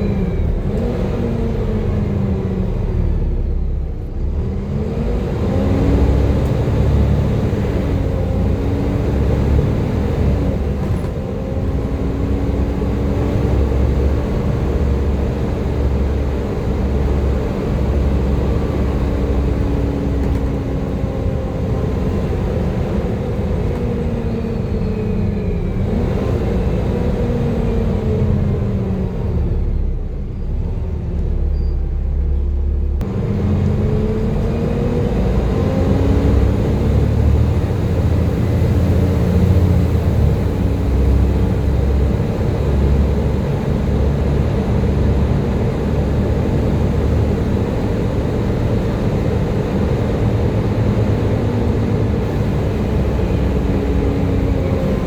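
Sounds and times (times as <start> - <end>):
bus diesel engine whining: 0.0 - 55.0
heavy low rumble: 27.8 - 55.0.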